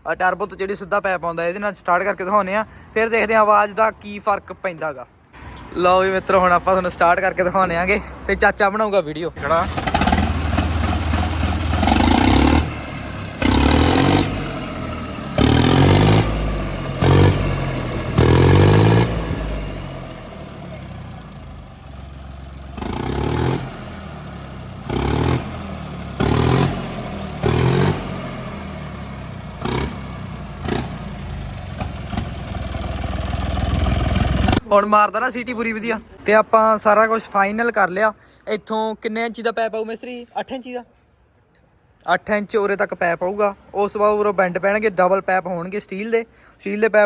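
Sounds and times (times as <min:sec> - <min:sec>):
tractor diesel engine revving: 0:09.2 - 0:34.8.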